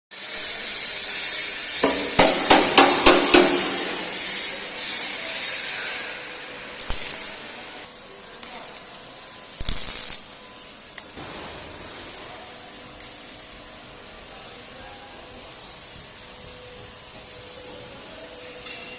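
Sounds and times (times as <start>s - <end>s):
steady high hiss: 0.1s - 18.9s
hammer striking metal: 1.8s - 4.6s.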